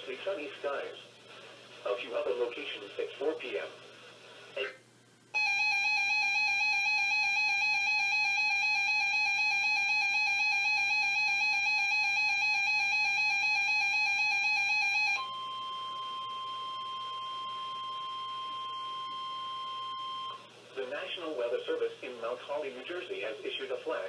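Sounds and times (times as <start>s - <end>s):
warbling electronic alarm tone: 5.4s - 20.4s.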